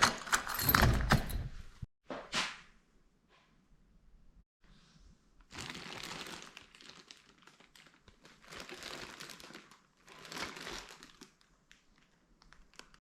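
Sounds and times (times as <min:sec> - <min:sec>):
plastic bag crinkling: 0:05.5 - 0:13.0.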